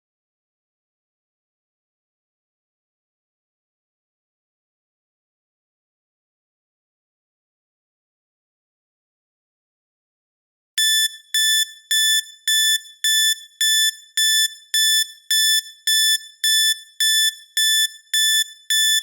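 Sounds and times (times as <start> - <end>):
timer alarm high-pitched beeping: 10.8 - 19.0.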